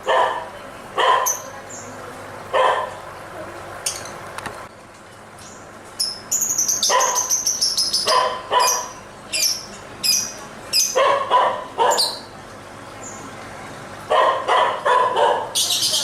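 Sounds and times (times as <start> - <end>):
bird shrill chirps: 6.0 - 11.0.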